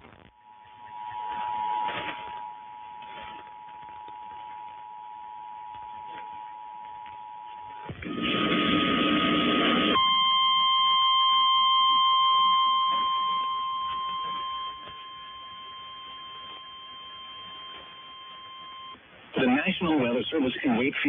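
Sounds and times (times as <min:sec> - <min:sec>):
high-pitched alarm beep: 0:10.0 - 0:19.0
loud radio noise: 0:19.3 - 0:21.0.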